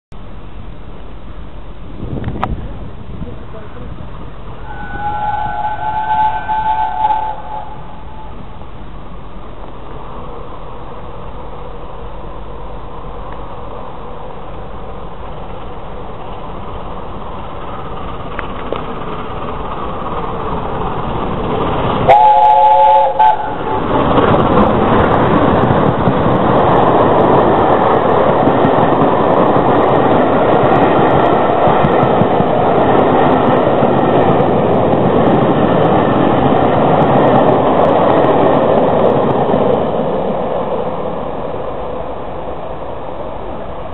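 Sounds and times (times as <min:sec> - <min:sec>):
steam locomotive accelerating: 0:00.2 - 0:43.9
train coaches passing: 0:00.2 - 0:43.9
chord whistle blast: 0:04.6 - 0:08.3.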